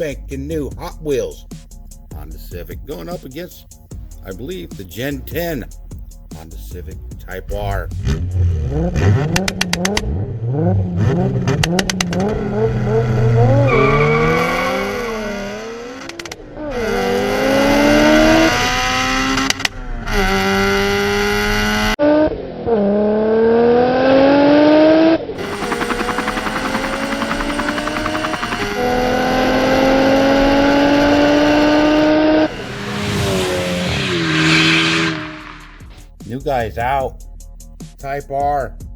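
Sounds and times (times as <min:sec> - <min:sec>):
car engine revving through gears: 0:07.9 - 0:36.1.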